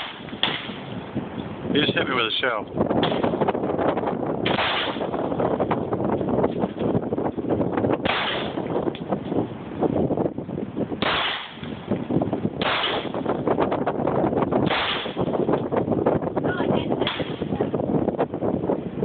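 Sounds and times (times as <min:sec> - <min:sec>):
pistol shots: 0:04.4 - 0:05.2, 0:08.0 - 0:08.6, 0:11.0 - 0:11.6, 0:12.6 - 0:13.2, 0:14.6 - 0:15.3.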